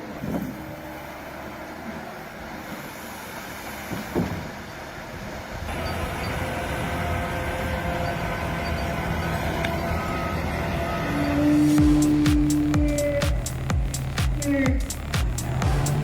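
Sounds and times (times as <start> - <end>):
heavy machinery engine running: 0.0 - 16.0
steady machine whine: 5.7 - 16.0.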